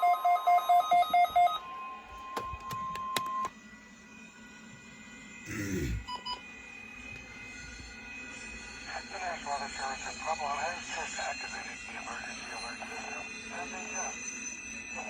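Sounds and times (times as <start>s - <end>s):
steady warning alarm tone: 0.0s - 15.0s
rapid pulsed beeping: 6.0s - 15.0s.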